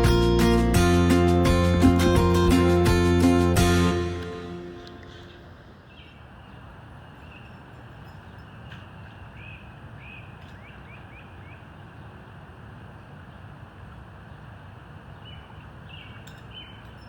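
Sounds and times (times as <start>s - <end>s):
birds chirping: 0.0s - 11.7s, 15.2s - 17.0s.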